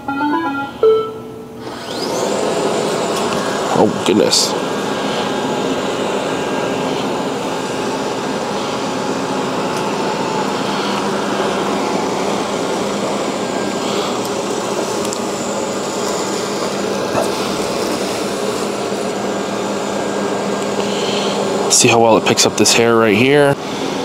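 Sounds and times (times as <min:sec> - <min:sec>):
robot vacuum whirring: 0:01.6 - 0:03.7.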